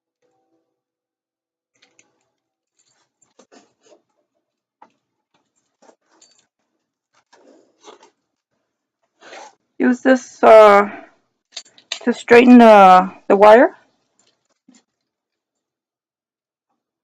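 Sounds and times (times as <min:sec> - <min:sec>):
wire being handled: 0:01.7 - 0:09.6, 0:13.9 - 0:15.7.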